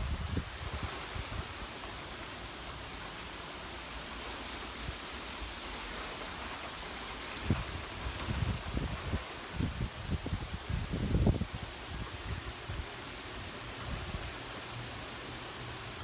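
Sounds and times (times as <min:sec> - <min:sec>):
wind buffeting microphone: 0:00.0 - 0:01.5, 0:07.4 - 0:12.9
rain hissing: 0:00.0 - 0:16.0.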